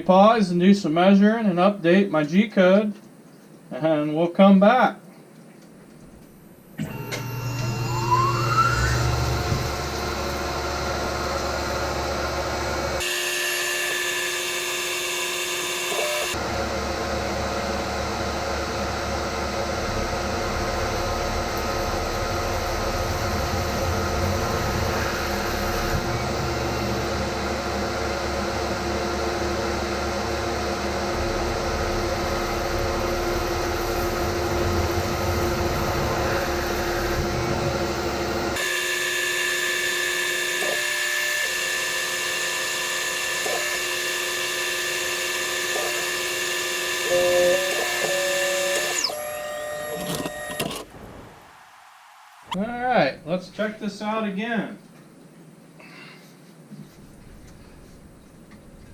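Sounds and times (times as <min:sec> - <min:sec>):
mill spindle whine: 0:06.0 - 0:52.7, 0:56.7 - 0:58.9
machining rumble: 0:06.1 - 0:13.0, 0:16.4 - 0:38.6, 0:56.9 - 0:58.9
motor pitch blips: 0:06.8 - 0:51.4.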